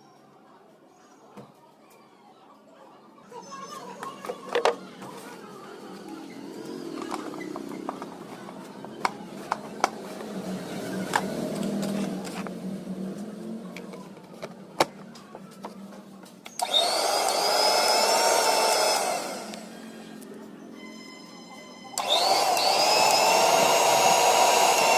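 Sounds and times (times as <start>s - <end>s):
mixer grinder motor whining: 6.4s - 14.5s, 16.5s - 19.9s, 22.0s - 24.9s.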